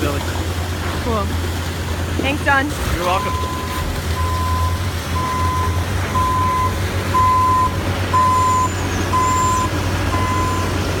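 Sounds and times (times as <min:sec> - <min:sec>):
diesel engine rumble: 0:00.0 - 0:11.0
reversing alarm beeping: 0:03.2 - 0:10.8.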